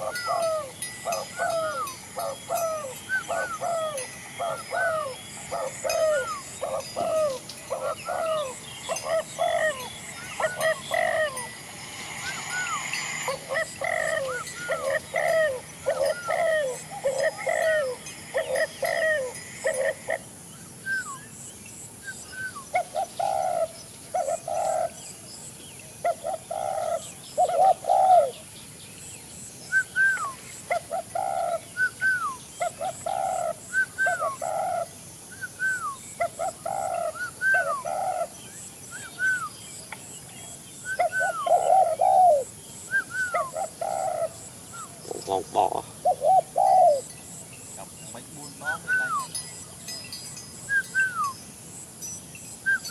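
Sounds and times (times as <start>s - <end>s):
doves cooing: 0.0s - 20.3s, 22.4s - 25.0s, 26.0s - 28.4s, 29.7s - 38.4s, 40.9s - 47.2s
birds whistling falling notes: 0.0s - 23.6s, 29.7s - 40.0s, 40.8s - 52.9s.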